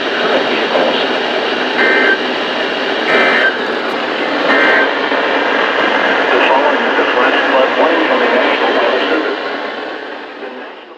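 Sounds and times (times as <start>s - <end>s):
radio receiver static hiss: 2.9s - 5.2s.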